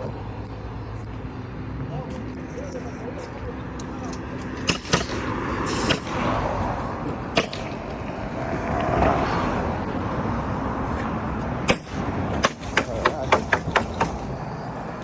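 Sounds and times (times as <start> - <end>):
pneumatic nail gun shots: 4.6 - 6.1, 7.4 - 7.8, 11.7 - 14.2.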